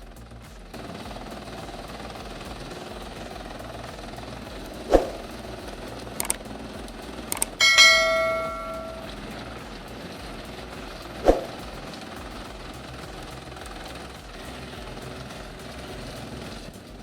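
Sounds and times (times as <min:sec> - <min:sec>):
steady machine hum: 0:00.0 - 0:17.0
short clicks: 0:06.1 - 0:06.5, 0:07.3 - 0:09.1
loud metallic clang: 0:07.4 - 0:09.2.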